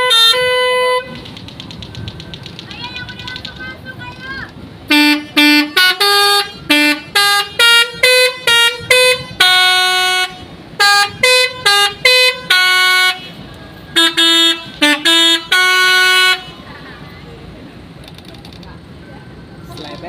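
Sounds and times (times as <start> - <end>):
bus horn playing a tune: 0.0 - 1.2, 4.9 - 16.7.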